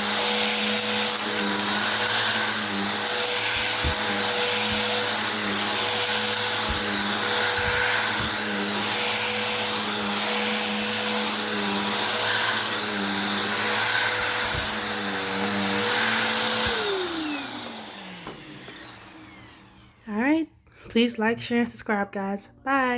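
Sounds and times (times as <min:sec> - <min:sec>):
vacuum cleaner running: 0:00.0 - 0:20.2.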